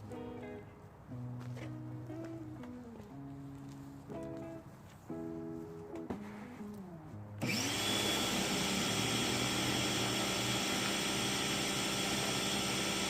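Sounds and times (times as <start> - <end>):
pressure washer whining: 7.4 - 13.0.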